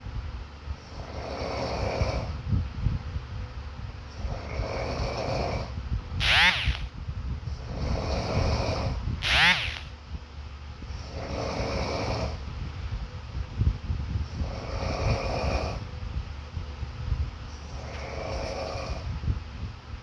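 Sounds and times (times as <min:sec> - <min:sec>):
rasping snoring: 0:18.0 - 0:19.1.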